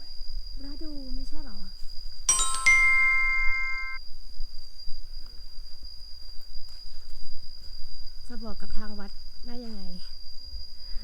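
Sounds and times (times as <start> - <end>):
high insect drone: 0.0 - 11.0
bright ringing chime: 2.3 - 4.0.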